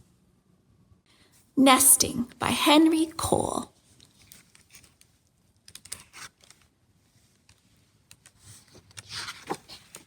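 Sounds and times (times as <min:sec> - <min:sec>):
book pages turning: 0:04.0 - 0:06.7, 0:07.5 - 0:10.0.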